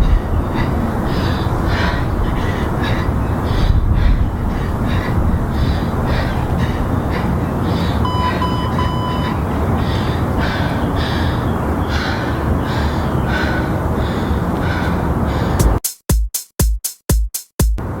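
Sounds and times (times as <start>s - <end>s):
low rumble: 0.0s - 7.2s
woman breathing hard and gasping: 0.0s - 15.8s
workout timer beeps: 8.0s - 9.4s.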